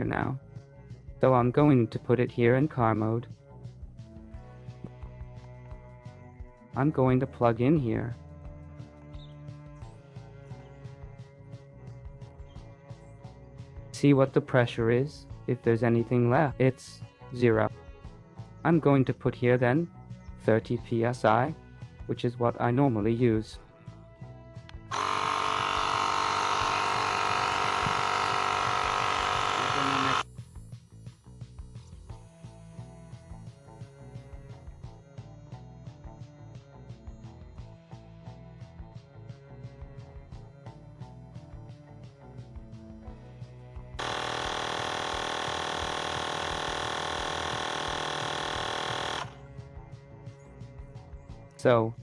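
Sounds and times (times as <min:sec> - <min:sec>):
electric air compressor humming: 0:24.9 - 0:30.2, 0:44.0 - 0:49.5.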